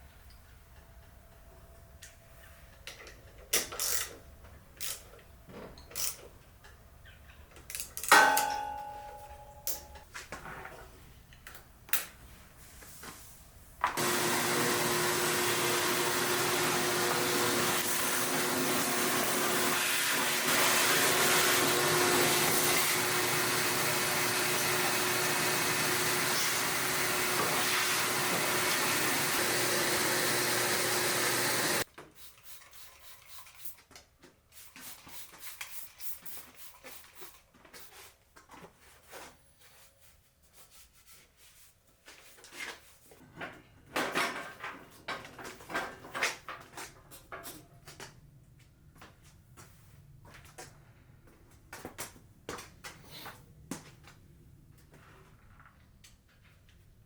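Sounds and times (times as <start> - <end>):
tools clicking and knocking: 2.8 - 6.8, 7.5 - 10.1
metallic ring: 8.1 - 10.0
motor-driven machine running: 14.0 - 31.8.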